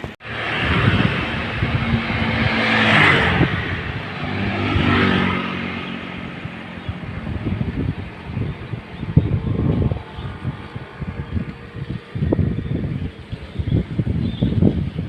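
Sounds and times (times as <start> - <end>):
road traffic engines: 0.0 - 15.0
vehicles passing close by: 0.0 - 15.0.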